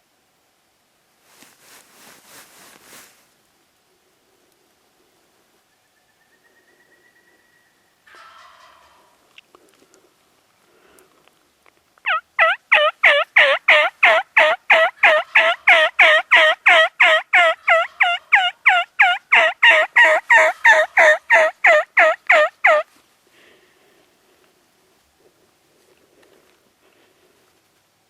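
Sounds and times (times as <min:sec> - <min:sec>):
turkey yelps: 0:12.1 - 0:22.9.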